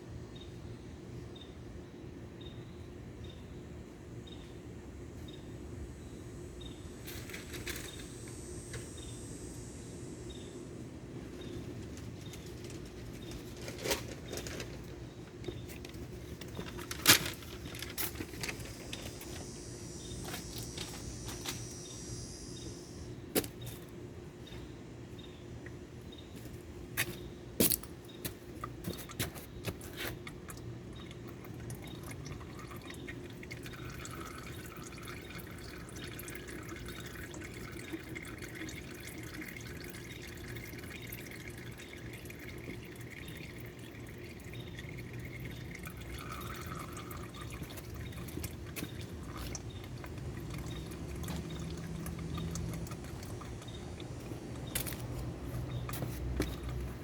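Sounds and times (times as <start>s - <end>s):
oil trickling into drain pan: 28.6s - 56.9s.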